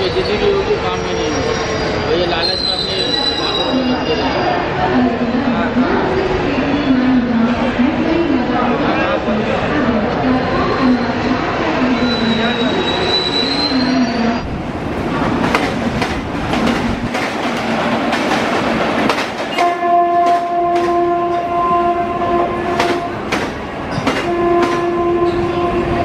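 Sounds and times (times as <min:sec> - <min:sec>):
loud rushing of passing train: 0:00.0 - 0:26.0
train wheels clicking over rail joints: 0:15.1 - 0:21.0, 0:22.8 - 0:24.9
train horn blast: 0:19.5 - 0:23.4, 0:24.1 - 0:26.0.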